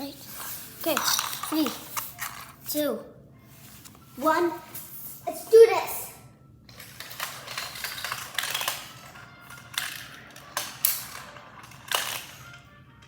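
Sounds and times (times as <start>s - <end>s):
marbles rolling down plastic run: 0.4s - 2.5s, 6.7s - 13.0s.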